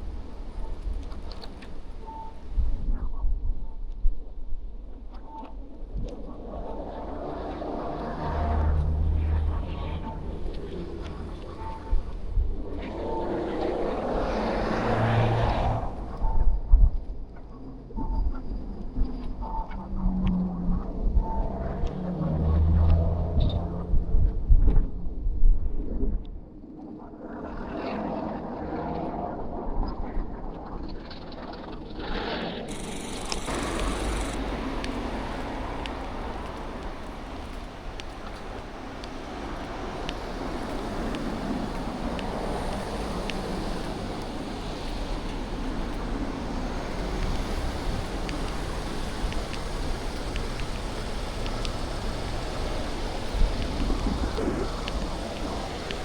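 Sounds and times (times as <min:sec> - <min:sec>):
road traffic rumble: 0:06.1 - 0:16.3, 0:32.7 - 0:56.0.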